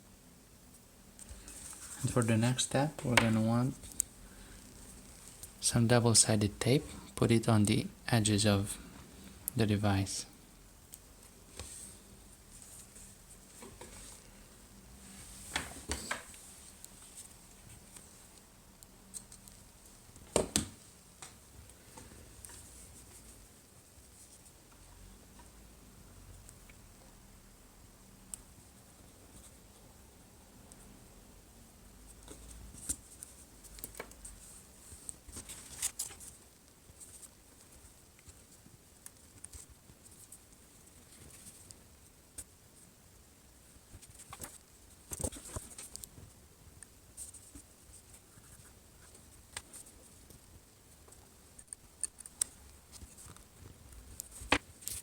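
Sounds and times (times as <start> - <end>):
small clicks and light scratching: 3.2 - 5.6, 15.5 - 20.2, 21.2 - 25.6, 32.1 - 55.0.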